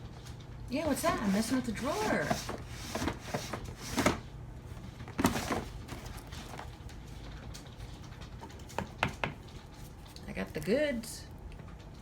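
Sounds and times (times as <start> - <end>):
drawer being rummaged: 0.9 - 4.2, 5.0 - 6.8.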